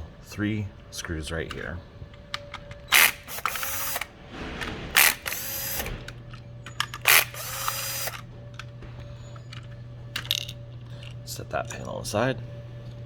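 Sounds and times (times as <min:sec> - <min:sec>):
screwdriver click: 0:02.3 - 0:04.1, 0:06.8 - 0:08.2
screwdriver rasping: 0:02.9 - 0:04.1, 0:05.0 - 0:06.0, 0:07.0 - 0:08.2.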